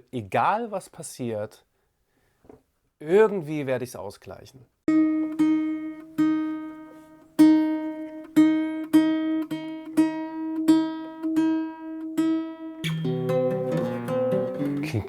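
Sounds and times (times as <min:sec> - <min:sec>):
acoustic guitar strumming: 0:04.9 - 0:15.0.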